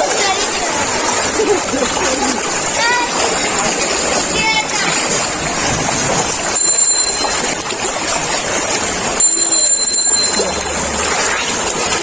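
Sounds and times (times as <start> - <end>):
floodwater rushing: 0.0 - 12.0
high-pitched ringing tones: 6.4 - 8.0, 9.2 - 11.0.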